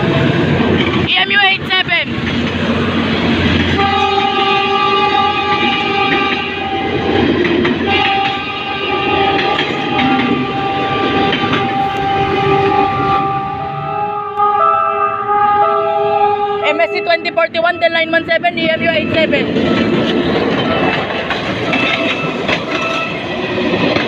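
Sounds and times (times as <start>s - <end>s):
train rumble and clatter: 0.0s - 24.0s
locomotive horn blasts: 3.7s - 7.1s, 7.8s - 18.0s.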